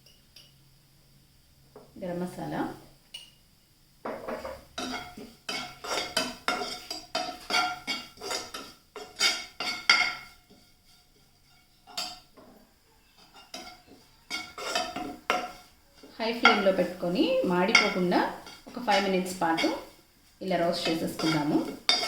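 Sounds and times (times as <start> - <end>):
spoon knocking on pan: 4.0 - 12.6, 13.2 - 19.9, 20.7 - 22.0
spoon scraping cooking pan: 4.0 - 22.0.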